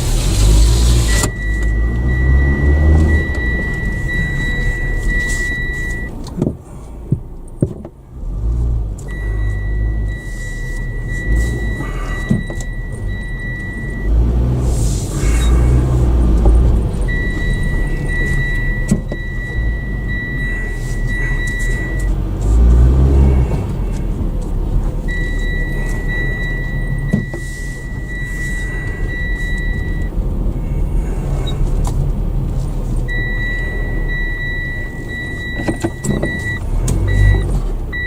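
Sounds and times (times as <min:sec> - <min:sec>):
car engine and road rumble: 0:00.0 - 0:38.0
high electronic beep tone: 0:01.0 - 0:06.1, 0:09.1 - 0:14.2, 0:15.2 - 0:15.7, 0:17.1 - 0:22.2, 0:25.1 - 0:30.1, 0:33.1 - 0:38.0.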